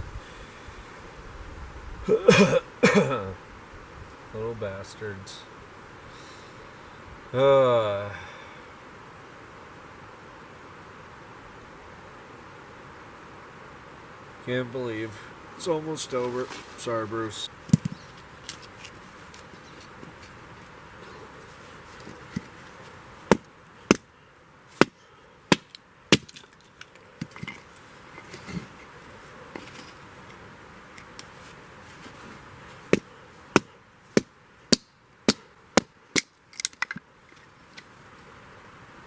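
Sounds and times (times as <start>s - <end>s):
blade chopping wood: 23.3s - 24.0s, 24.8s - 26.5s.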